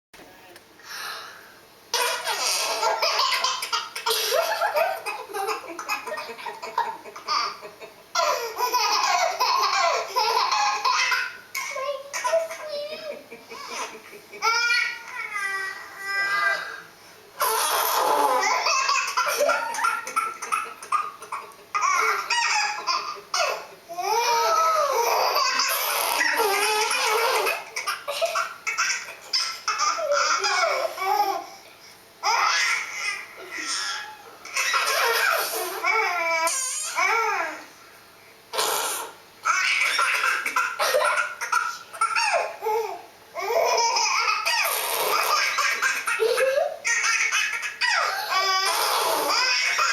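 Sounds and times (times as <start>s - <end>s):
baby laughing: 1.9s - 31.6s, 32.2s - 37.6s, 38.5s - 49.9s.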